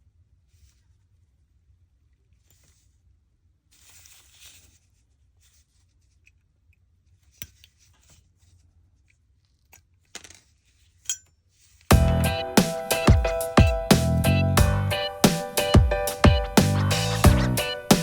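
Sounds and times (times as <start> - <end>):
soft scrape on workbench: 2.3 - 3.1, 3.7 - 6.3, 7.2 - 8.8.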